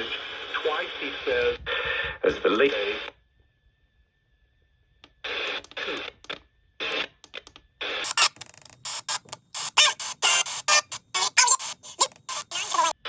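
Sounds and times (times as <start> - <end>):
chopped radio broadcast fragments: 7.9 - 13.0.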